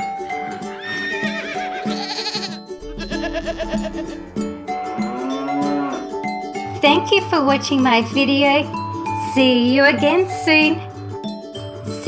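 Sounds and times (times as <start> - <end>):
background music: 0.0 - 12.0
goat bleating: 0.7 - 4.4.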